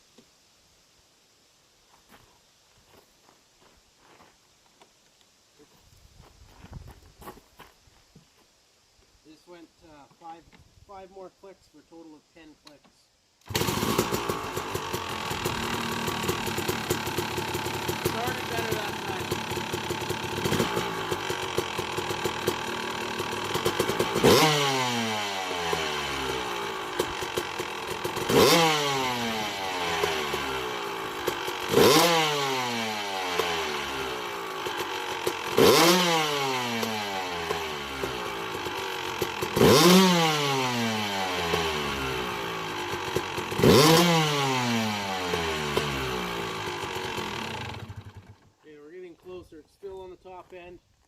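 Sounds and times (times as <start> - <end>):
two-stroke engine revving: 13.4 - 48.5.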